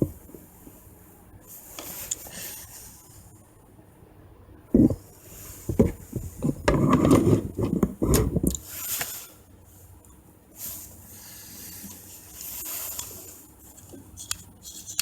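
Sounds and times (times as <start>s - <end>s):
objects knocking and rubbing: 4.7s - 8.6s.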